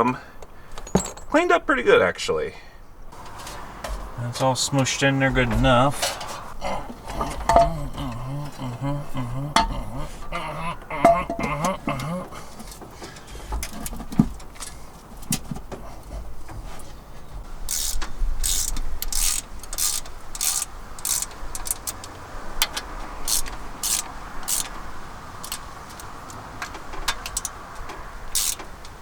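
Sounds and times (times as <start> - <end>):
ratchet wrench clicking: 17.7 - 24.8, 25.4 - 26.4, 27.1 - 27.6, 28.3 - 29.0.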